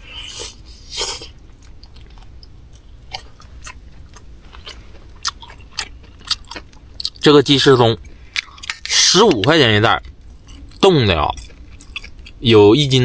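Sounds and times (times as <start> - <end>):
chewing mouth sounds: 0.1 - 7.2, 10.0 - 12.4.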